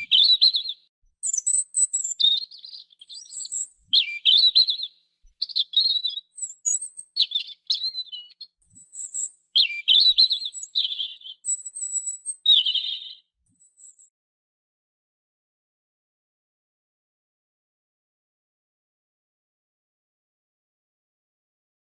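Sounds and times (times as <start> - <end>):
robin singing: 0.0 - 14.1.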